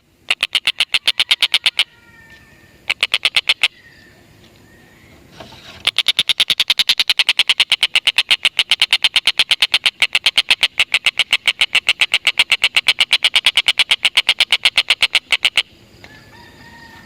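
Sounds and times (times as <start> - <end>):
kingfisher cackling: 0.3 - 1.9, 2.8 - 3.8, 5.8 - 15.7.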